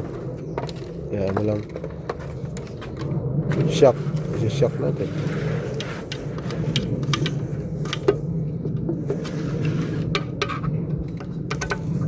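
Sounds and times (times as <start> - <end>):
steady low hum: 0.0 - 12.0
small hard parts clicking: 11.0 - 12.0.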